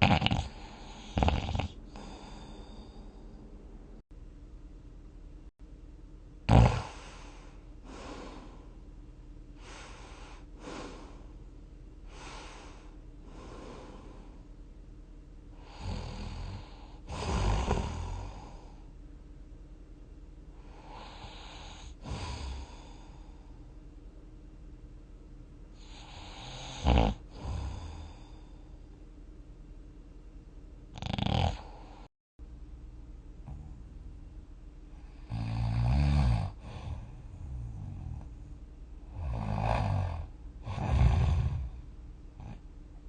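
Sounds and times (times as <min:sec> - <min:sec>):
person snoring: 0:00.0 - 0:03.2, 0:06.5 - 0:08.7, 0:09.6 - 0:11.3, 0:12.1 - 0:14.4, 0:15.6 - 0:18.8, 0:20.6 - 0:23.5, 0:25.8 - 0:28.6, 0:30.9 - 0:32.1, 0:35.0 - 0:38.4, 0:39.0 - 0:41.8
short sharp snort: 0:17.1 - 0:18.0.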